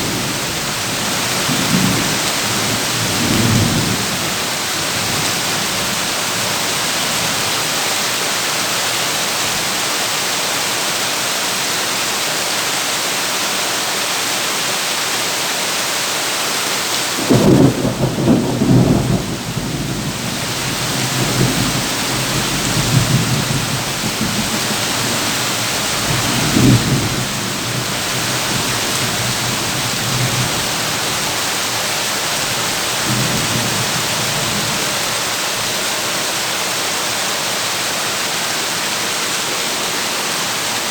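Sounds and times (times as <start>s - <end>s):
thunder rumbling: 0.0s - 7.5s, 17.2s - 35.3s
heavy rain on a tin roof: 0.0s - 40.9s.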